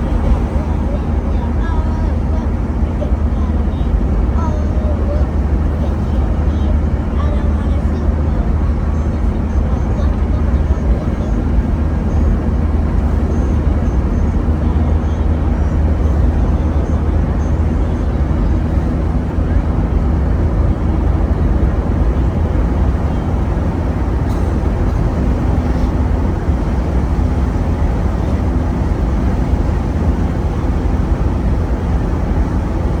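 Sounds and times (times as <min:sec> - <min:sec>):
car engine and road noise: 0:00.0 - 0:33.0.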